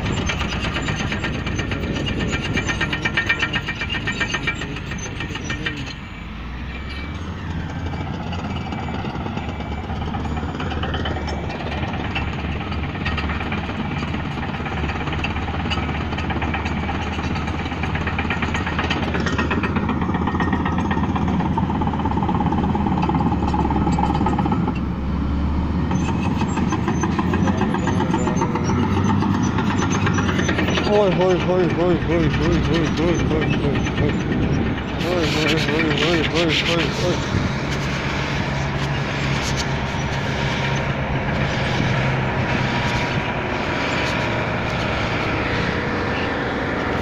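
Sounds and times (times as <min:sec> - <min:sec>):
fast rattle: 0:00.0 - 0:06.0
bulldozer diesel engine: 0:00.0 - 0:47.0.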